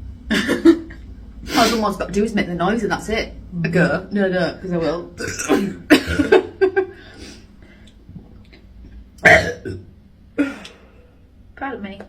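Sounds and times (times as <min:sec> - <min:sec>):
throaty sounds: 0:05.1 - 0:11.1
woman burping: 0:05.2 - 0:06.6, 0:09.2 - 0:10.8.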